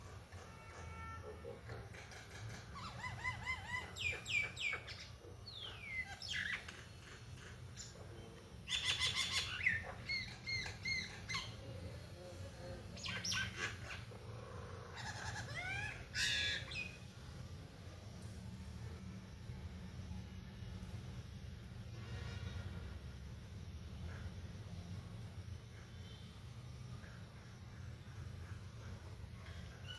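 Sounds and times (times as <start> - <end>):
steady low hum: 3.6 - 29.9.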